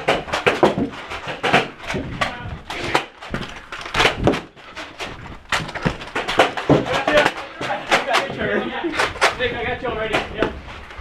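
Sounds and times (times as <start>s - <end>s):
dull thumps: 0.0s - 8.6s
sharp knocks and clacks: 0.0s - 9.4s.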